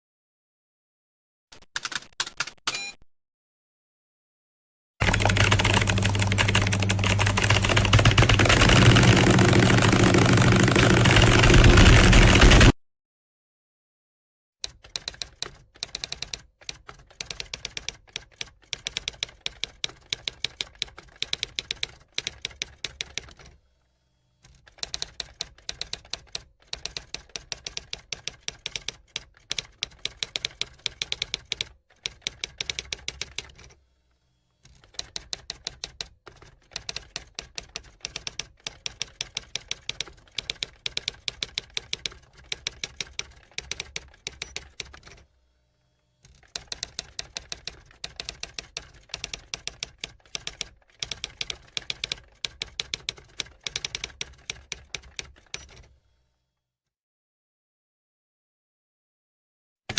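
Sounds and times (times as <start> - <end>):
fast typing on keyboard: 1.6 - 2.6, 5.0 - 12.8, 14.6 - 23.6, 24.5 - 33.8, 34.7 - 45.2, 46.3 - 55.9.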